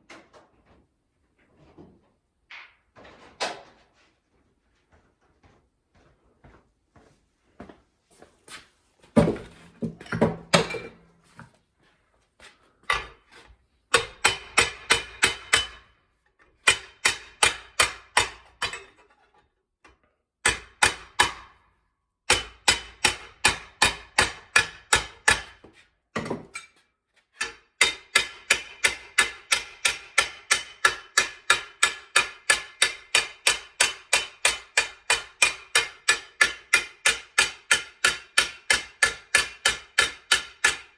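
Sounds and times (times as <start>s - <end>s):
hammer striking sheet steel: 13.9s - 16.0s, 16.6s - 18.9s, 20.4s - 21.6s, 22.3s - 25.6s, 27.4s - 40.9s.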